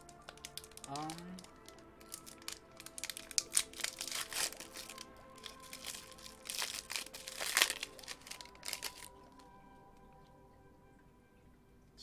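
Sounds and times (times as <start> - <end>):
foil wrapper crinkling: 0.0 - 9.5.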